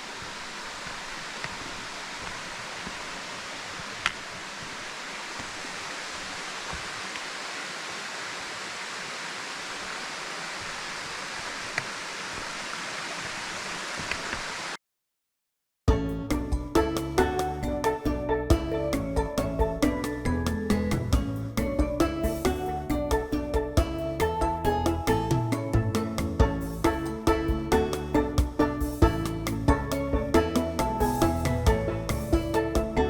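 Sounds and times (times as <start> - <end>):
waterfall rushing: 0.0 - 14.8
background music: 15.9 - 33.0.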